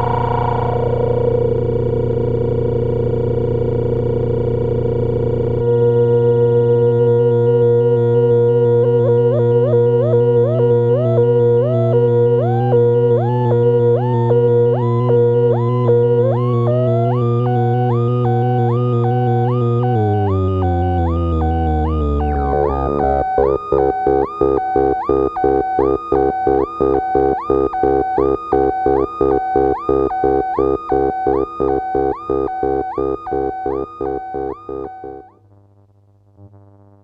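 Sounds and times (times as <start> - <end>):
short rising synth blip: 0.0 - 2.1
pulsing synth drone: 0.0 - 35.3.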